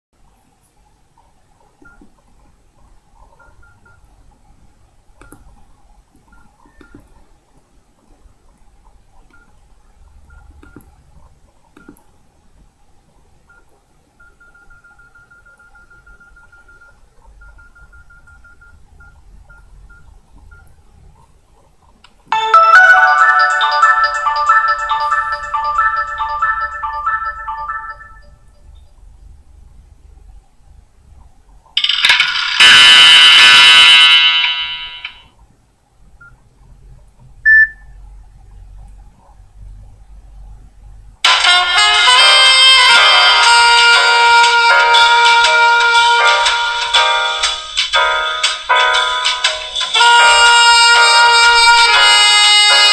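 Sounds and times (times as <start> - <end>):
keypad beeps: 1.8 - 2.1, 3.4 - 4.0, 6.3 - 7.1, 10.3 - 10.9, 11.8 - 12.0, 13.5 - 20.8, 37.4 - 37.9
buzzing electronic ringtone: 22.4 - 28.6, 31.8 - 35.3, 41.3 - 52.9
short beep: 37.5 - 37.8.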